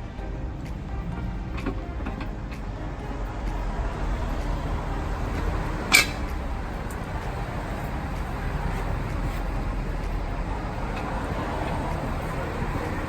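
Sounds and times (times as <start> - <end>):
low rumble of road traffic: 0.0 - 13.0.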